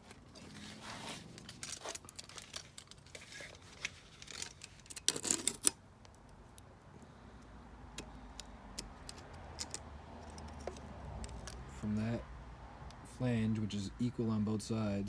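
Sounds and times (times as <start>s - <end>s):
tools and parts clicking: 1.2s - 6.7s, 7.4s - 11.8s.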